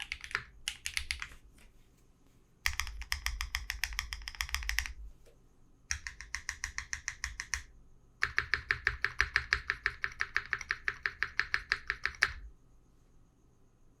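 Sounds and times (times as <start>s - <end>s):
mechanical keyboard key presses: 0.0s - 1.4s, 2.7s - 5.0s, 5.9s - 12.4s.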